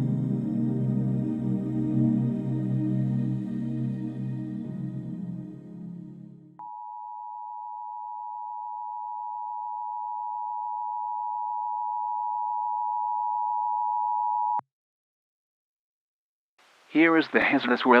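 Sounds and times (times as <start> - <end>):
soft ambient music: 0.0 - 6.6.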